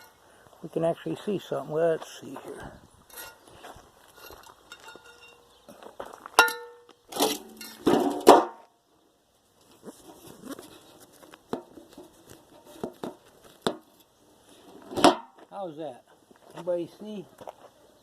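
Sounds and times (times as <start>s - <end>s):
scrap metal scraping clatters: 3.1s - 5.4s, 6.4s - 8.6s, 9.8s - 15.4s
metallic clank: 6.4s - 8.6s.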